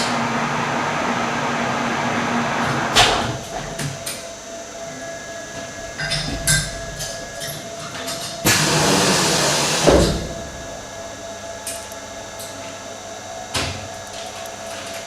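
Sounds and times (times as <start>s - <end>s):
milling machine humming: 0.0s - 15.0s
machine clunk: 5.6s - 11.2s
loud hissing burst: 8.4s - 11.2s.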